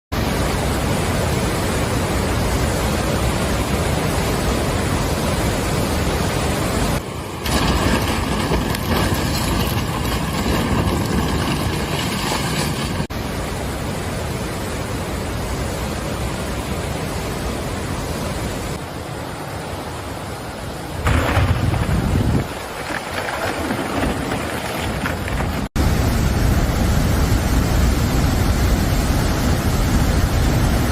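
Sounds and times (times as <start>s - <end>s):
strong storm wind blowing: 0.5s - 13.1s, 20.9s - 30.9s.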